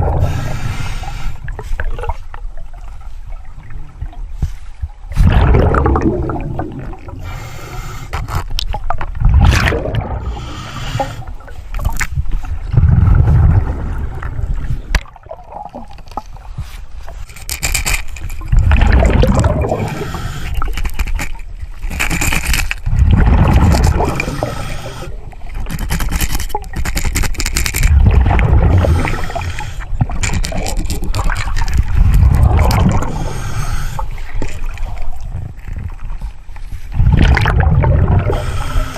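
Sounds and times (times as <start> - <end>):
regulator hissing inhale: 0.1 - 1.4, 7.2 - 8.4, 10.2 - 11.6, 19.8 - 21.0, 24.1 - 25.3, 28.7 - 30.2, 33.0 - 34.4, 38.3 - 38.9
bubbling exhale: 5.1 - 8.4, 9.2 - 11.6, 18.4 - 21.3, 22.9 - 26.2, 27.9 - 35.2, 36.9 - 38.9.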